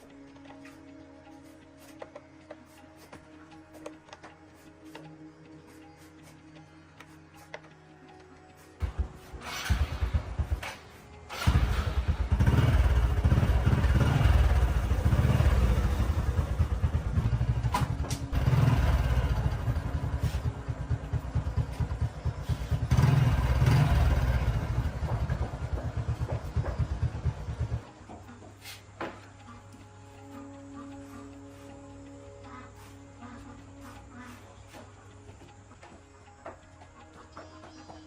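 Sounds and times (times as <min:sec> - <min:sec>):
motorcycle engine revving: 0:08.8 - 0:29.2.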